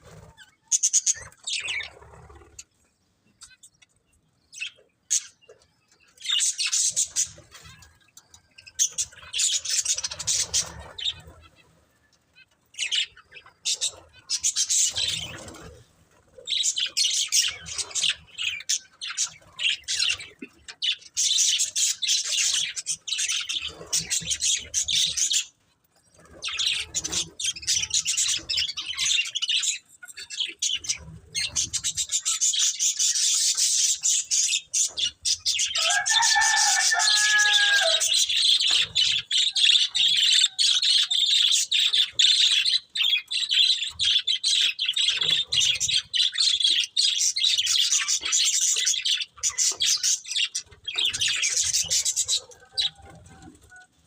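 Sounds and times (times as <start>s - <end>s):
budgerigars chirping: 16.4s - 25.6s, 26.5s - 53.0s.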